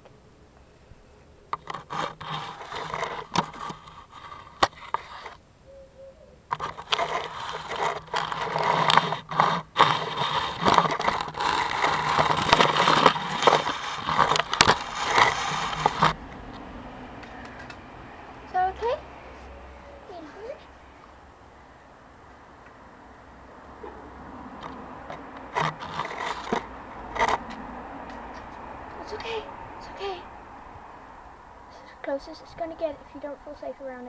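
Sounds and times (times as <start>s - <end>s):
camera scraping and rubbing: 1.6s - 5.4s, 6.5s - 16.2s, 24.6s - 28.6s.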